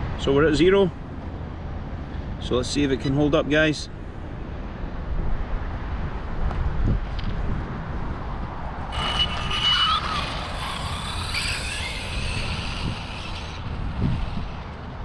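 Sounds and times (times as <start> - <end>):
wind buffeting microphone: 5.0 - 15.0
rc car motor whine: 8.7 - 15.0.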